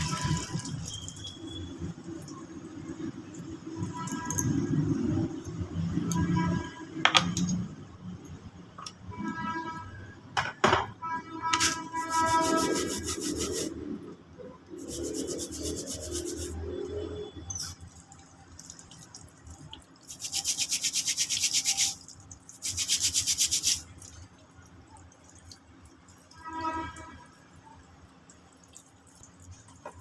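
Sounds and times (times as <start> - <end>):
rapid rubbing strokes: 11.6 - 13.7, 14.7 - 16.6, 20.0 - 22.0, 22.6 - 23.8.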